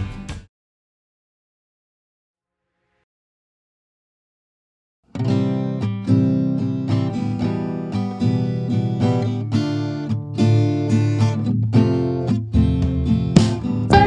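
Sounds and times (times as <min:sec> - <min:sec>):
strummed acoustic guitar music: 0:05.1 - 0:14.0.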